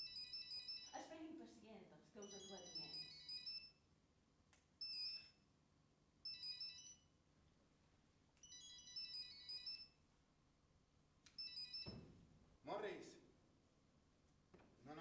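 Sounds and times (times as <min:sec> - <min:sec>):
telephone melodic ringtone: 0:00.0 - 0:01.1, 0:02.2 - 0:03.8, 0:04.8 - 0:05.3, 0:06.2 - 0:07.0, 0:08.4 - 0:10.0, 0:11.4 - 0:12.0.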